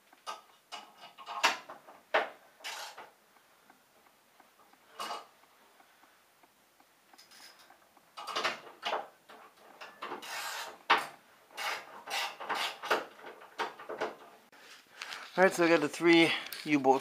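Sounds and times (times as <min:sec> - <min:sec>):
hand tools scraping and rasping: 0:10.1 - 0:10.8, 0:11.6 - 0:13.1.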